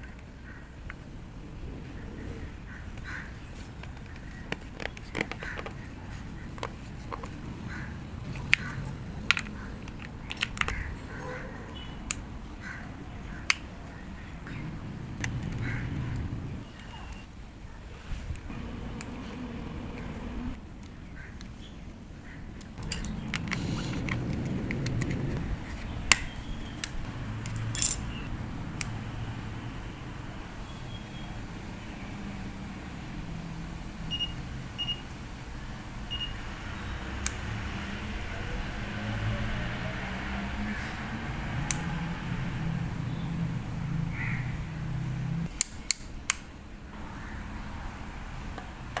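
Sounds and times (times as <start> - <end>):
low handling rumble: 14.0 - 17.0, 18.4 - 20.6
small objects clicking and tapping: 26.1 - 28.1.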